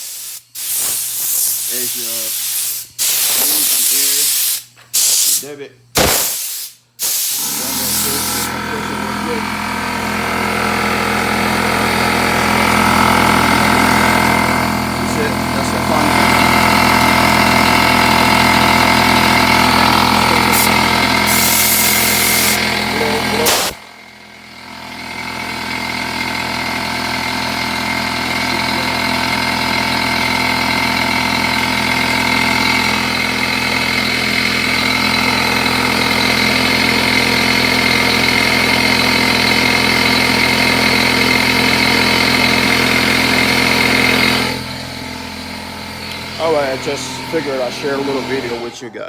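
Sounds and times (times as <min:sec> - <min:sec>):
air hiss: 0:00.0 - 0:08.5, 0:20.5 - 0:22.8, 0:23.4 - 0:23.8
air compressor running: 0:00.0 - 0:49.0.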